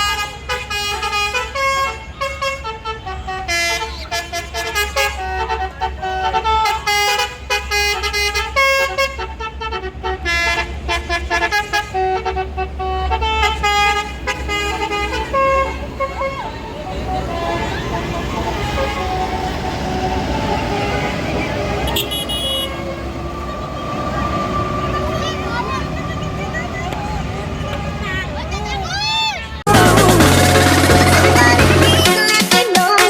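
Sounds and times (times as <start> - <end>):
bus multi-trumpet horn tune: 0.0 - 28.1, 29.6 - 32.5
engine and road rumble: 0.0 - 32.1.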